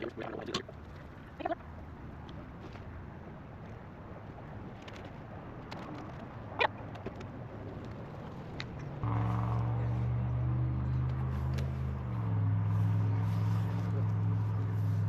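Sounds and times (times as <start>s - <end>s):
outdoor background noise: 0.0s - 15.0s.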